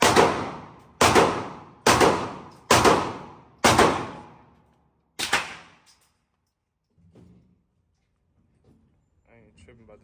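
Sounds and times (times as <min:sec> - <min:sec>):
gunshots with ringing echo: 0:00.0 - 0:04.5.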